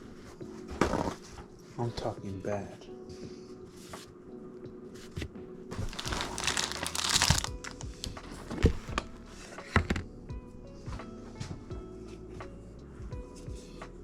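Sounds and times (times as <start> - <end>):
crinkling and rustling: 4.9 - 10.0.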